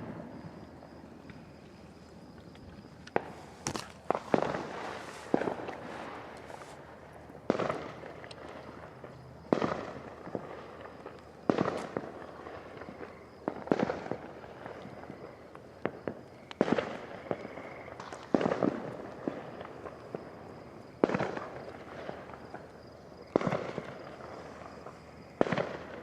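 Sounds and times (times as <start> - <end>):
fireworks pops: 3.0 - 6.8, 23.3 - 24.0, 25.4 - 26.0
fireworks bangs: 3.1 - 6.6, 7.5 - 8.8, 9.5 - 14.6, 15.8 - 20.4, 21.0 - 22.6, 23.3 - 26.0.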